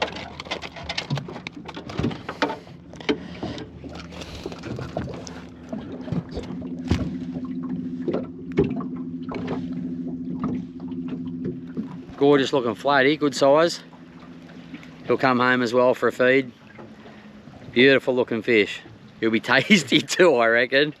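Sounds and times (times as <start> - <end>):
fish and net knocking in boat: 0.0 - 12.2
electric hum: 0.0 - 17.8.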